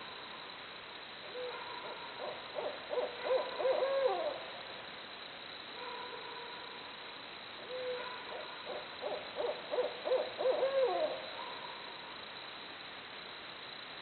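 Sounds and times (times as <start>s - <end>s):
owl hooting: 1.3s - 4.5s, 7.6s - 11.5s.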